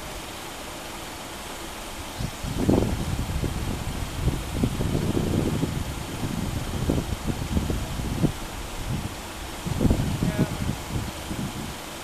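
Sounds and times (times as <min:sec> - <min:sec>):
steady hiss: 0:00.0 - 0:12.0
wind buffeting microphone: 0:01.7 - 0:12.0.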